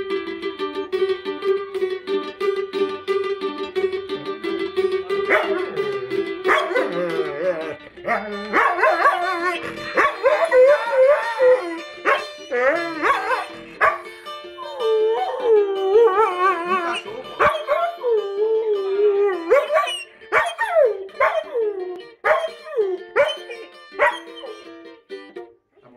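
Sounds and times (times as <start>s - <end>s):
strummed small guitar chords: 0.0s - 25.9s
dog howling: 5.3s - 24.6s.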